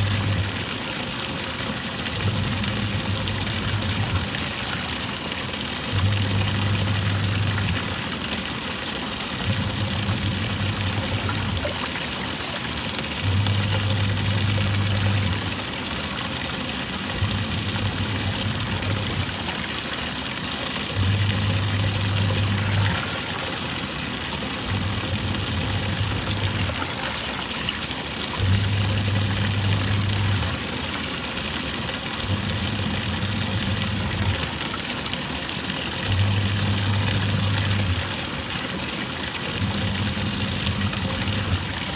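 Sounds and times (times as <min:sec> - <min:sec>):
washing machine motor humming: 0:00.0 - 0:41.9
water sloshing: 0:03.2 - 0:15.6, 0:16.6 - 0:30.9.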